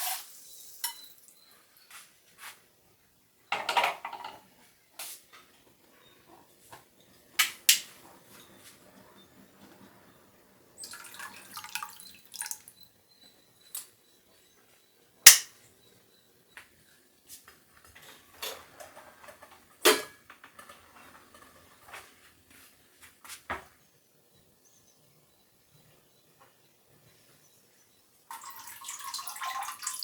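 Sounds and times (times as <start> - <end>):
kitchen items knocking and clinking: 3.5 - 4.5, 18.0 - 21.7.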